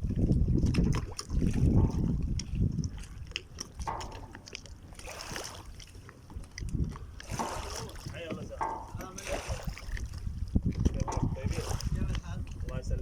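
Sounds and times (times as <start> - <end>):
water sloshing around boat: 0.0 - 13.0
wind rumble on microphone: 0.0 - 13.0.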